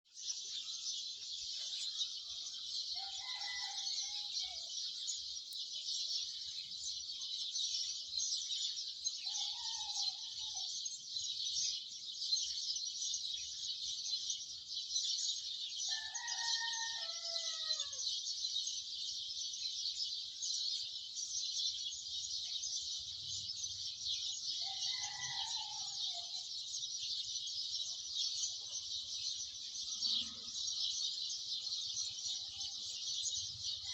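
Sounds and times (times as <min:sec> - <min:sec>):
sparrows chirping: 0:00.1 - 0:33.9
rooster crowing: 0:03.0 - 0:04.7, 0:09.3 - 0:10.7, 0:15.9 - 0:18.0, 0:24.6 - 0:26.3.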